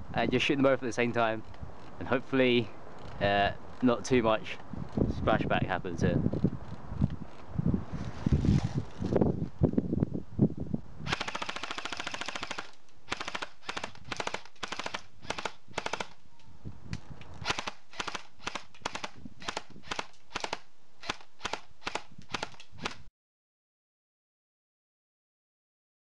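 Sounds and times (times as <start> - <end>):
airsoft rifle firing: 11.1 - 16.2, 17.5 - 23.0.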